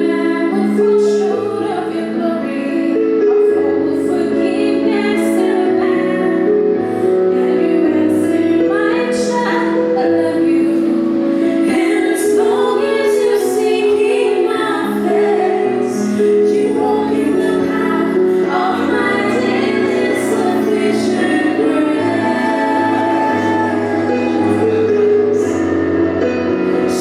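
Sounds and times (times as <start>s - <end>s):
vocal group singing in harmony: 0.0s - 27.0s.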